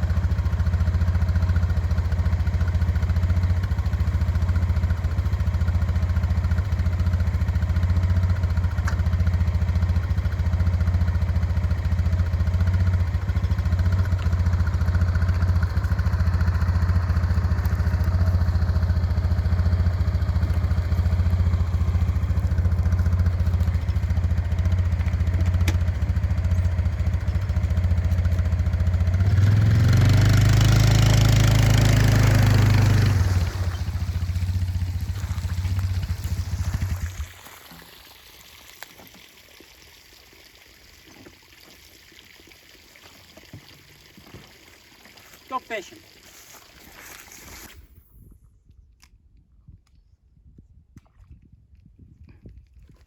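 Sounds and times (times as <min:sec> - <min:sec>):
engine humming: 0:00.0 - 0:37.8.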